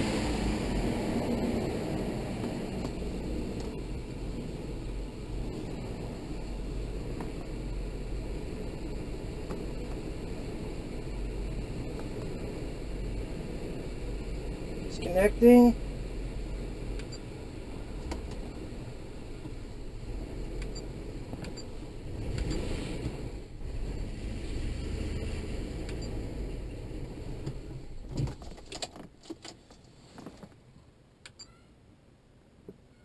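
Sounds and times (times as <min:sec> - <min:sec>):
low rumble in car cabin: 0:00.0 - 0:32.9
sharp clicks and rattles: 0:27.4 - 0:30.5.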